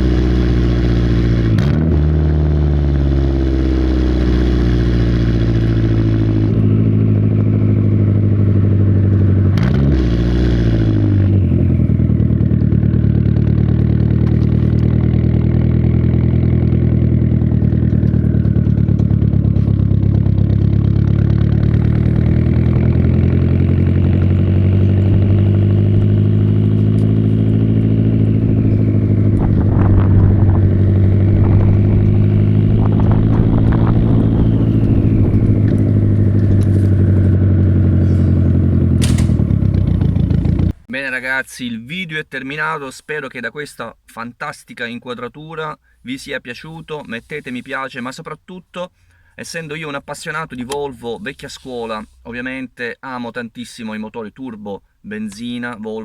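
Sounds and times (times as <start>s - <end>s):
car engine running: 0.0s - 40.9s
high turbo whine: 0.0s - 40.9s.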